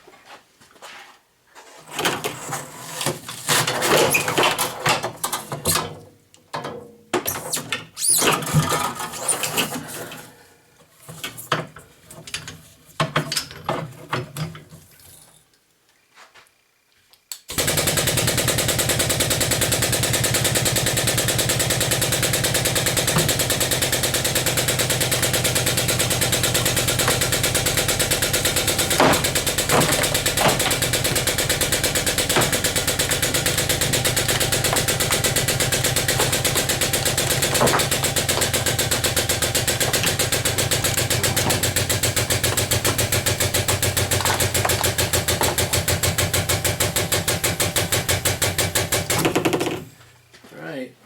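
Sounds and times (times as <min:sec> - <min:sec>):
motor running with fast pulse: 0:17.5 - 0:49.5.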